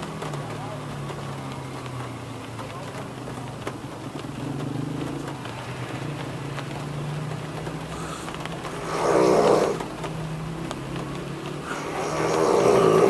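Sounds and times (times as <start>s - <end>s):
rain hiss: 0.0s - 13.0s
man snoring: 8.8s - 9.8s, 11.7s - 13.0s.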